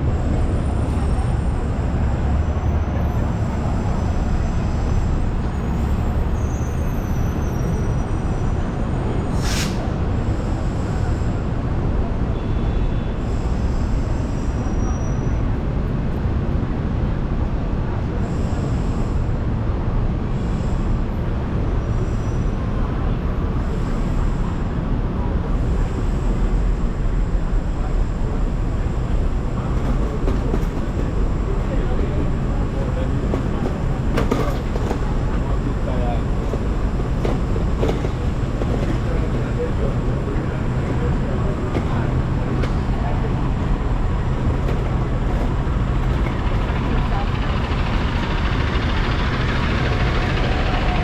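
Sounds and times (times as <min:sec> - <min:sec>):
heavy vehicle engine rumble: 0:00.0 - 0:51.0
short sharp hiss: 0:09.3 - 0:09.9.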